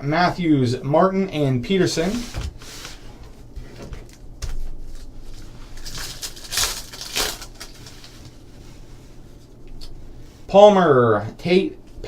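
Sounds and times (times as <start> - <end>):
card pack wrapper rustling: 4.9 - 8.4.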